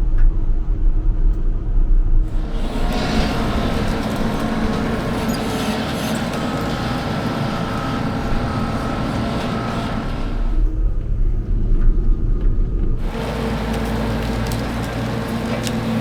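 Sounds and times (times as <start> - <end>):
combine harvester drone: 2.2 - 16.0
steady machine whine: 2.2 - 16.0.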